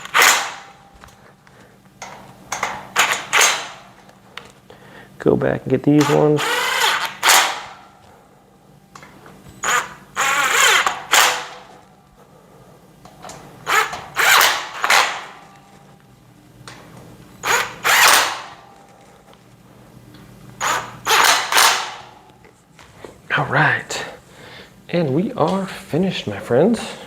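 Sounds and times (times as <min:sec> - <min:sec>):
drill-driver driving screws into metal: 0:00.0 - 0:00.7, 0:02.5 - 0:03.8, 0:06.0 - 0:07.7, 0:09.6 - 0:11.7, 0:13.6 - 0:15.3, 0:17.4 - 0:18.6, 0:20.6 - 0:22.0.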